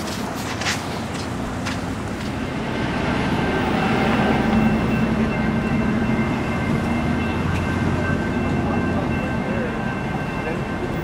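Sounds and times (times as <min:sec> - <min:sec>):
train rumbling past: 0:00.0 - 0:11.0.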